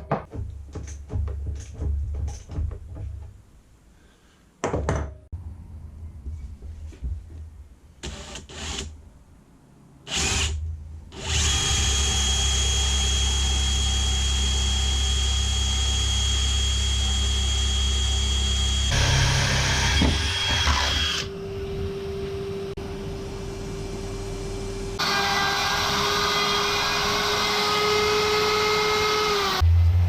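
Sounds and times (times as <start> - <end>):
power drill drilling wood: 11.2 - 21.3, 25.0 - 29.6.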